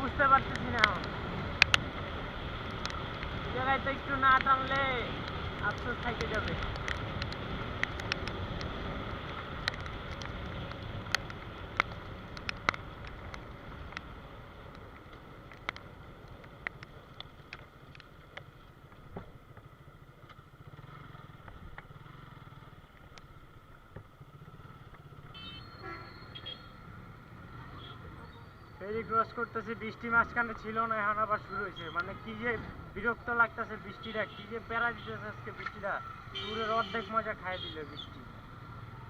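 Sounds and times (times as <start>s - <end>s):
sharp ticks: 0.4s - 3.4s, 4.2s - 23.3s
motorcycle engine at speed: 18.4s - 27.8s.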